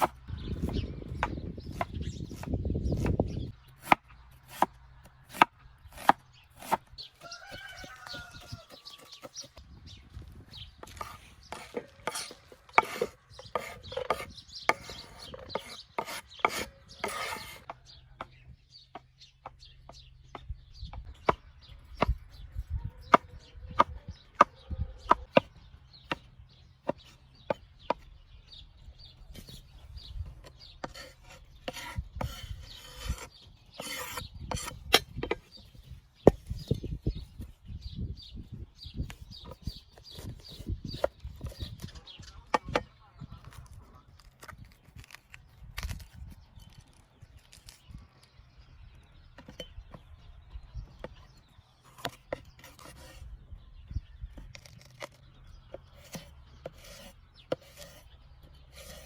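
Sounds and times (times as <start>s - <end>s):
scraping or rubbing: 10.8s - 17.7s, 29.2s - 37.4s, 51.9s - 53.4s, 54.4s - 59.0s.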